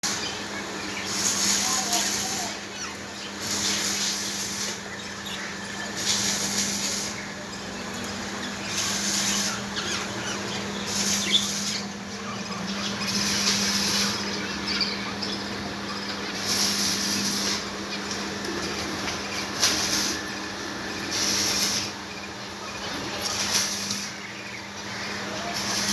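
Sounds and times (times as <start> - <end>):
steady low hum: 0.0 - 25.9
bursts of hiss: 0.1 - 7.8, 8.6 - 14.6, 15.7 - 17.8, 19.4 - 20.3, 21.0 - 22.1, 25.2 - 25.9
finches chirping: 0.1 - 18.2.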